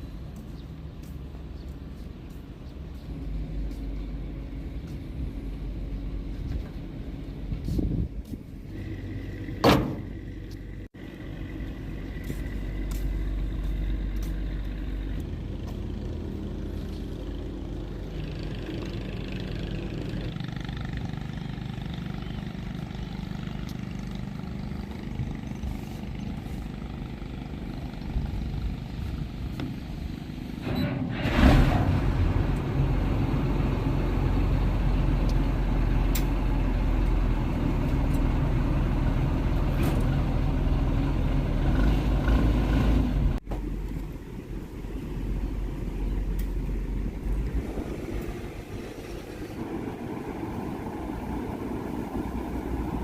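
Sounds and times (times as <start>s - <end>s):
boat engine humming: 0.0s - 53.0s.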